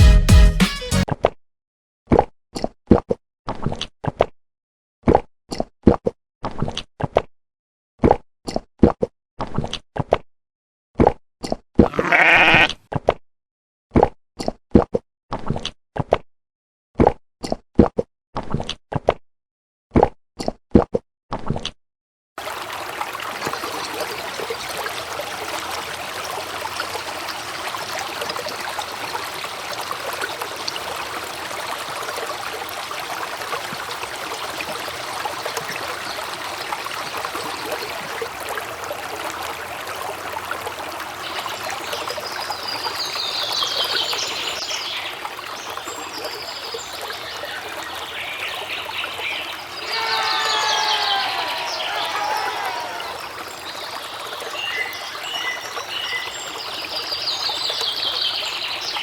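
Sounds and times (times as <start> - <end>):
trickle of running water: 22.4 - 59.0.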